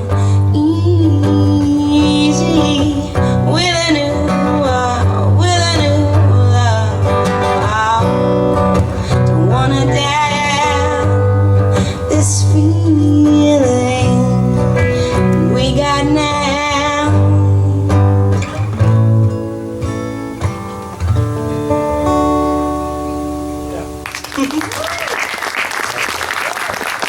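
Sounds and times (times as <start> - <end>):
acoustic guitar: 0.0 - 25.6
bass: 0.0 - 27.0.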